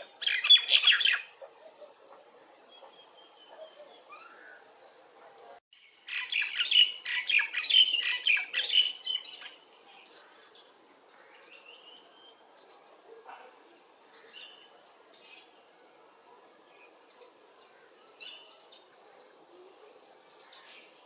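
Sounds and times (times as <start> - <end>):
birds chirping: 0.0 - 15.6.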